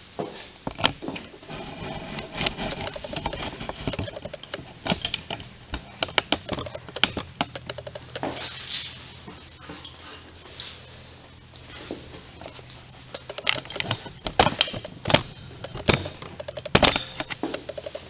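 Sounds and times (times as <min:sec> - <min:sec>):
hand tools clicking and knocking: 0:02.2 - 0:08.4, 0:12.4 - 0:18.0.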